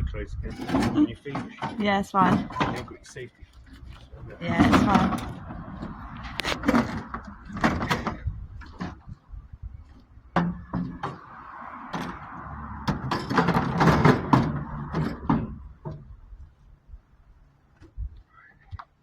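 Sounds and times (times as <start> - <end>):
scrap metal knocks and clatters: 0.4 - 9.2, 10.3 - 16.1.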